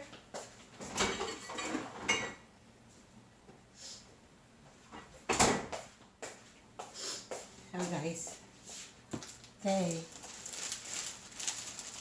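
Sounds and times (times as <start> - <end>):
dishes and cutlery clattering: 0.9 - 2.4.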